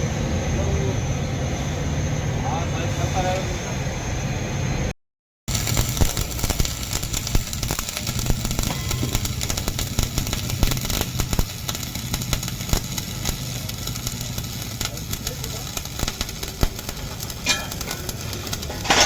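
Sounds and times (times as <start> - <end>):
welding arc crackling: 5.5 - 19.0.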